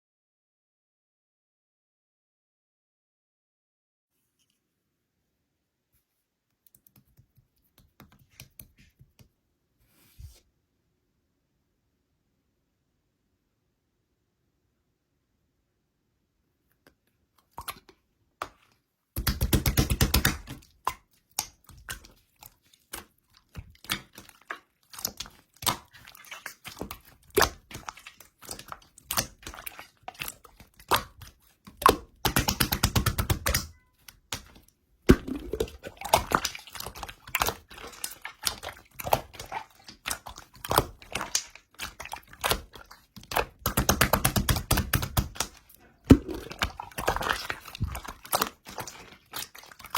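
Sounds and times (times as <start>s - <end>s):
slime squishing: 17.4s - 49.9s
slime bubbles popping clicks: 30.9s - 37.6s, 46.1s - 48.5s.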